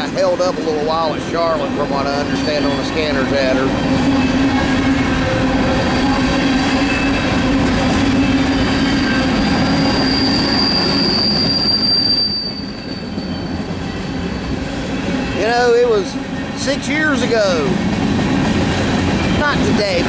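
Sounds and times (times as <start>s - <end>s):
high wheel squeal: 0.7s - 16.2s.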